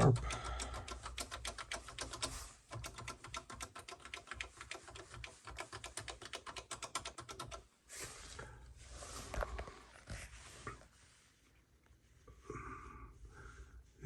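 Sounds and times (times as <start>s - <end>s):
keyboard typing clicks: 0.0s - 7.6s.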